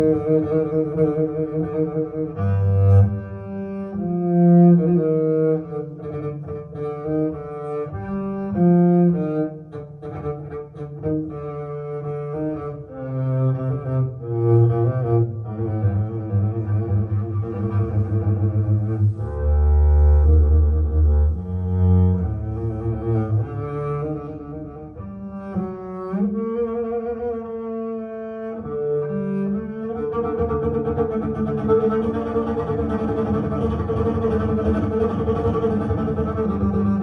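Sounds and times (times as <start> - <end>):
low bowed strings playing slow notes: 0.0 - 37.0.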